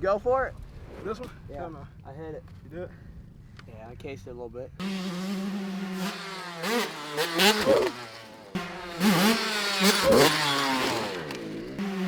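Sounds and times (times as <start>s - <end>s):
dirt bike engine revving: 4.8s - 12.0s.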